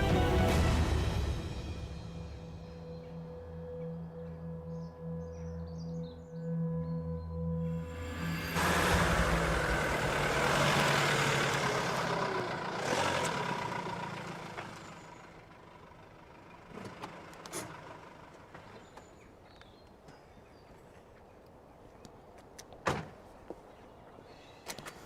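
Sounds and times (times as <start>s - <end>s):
vehicle engine running: 7.8s - 19.3s.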